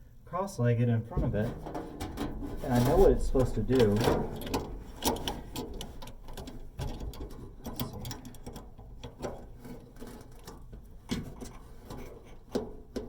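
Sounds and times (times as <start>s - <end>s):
clicks and taps on metal: 3.4s - 13.0s.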